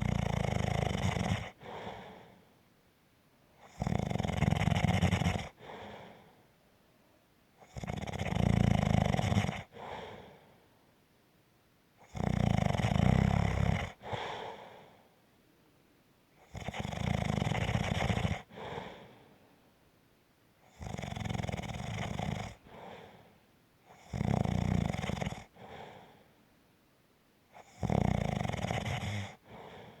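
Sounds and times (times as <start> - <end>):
rumbling snoring: 0.0 - 2.3, 3.6 - 6.2, 7.6 - 10.3, 12.0 - 14.6, 16.4 - 19.0, 20.7 - 23.2, 23.9 - 26.1, 27.6 - 30.0.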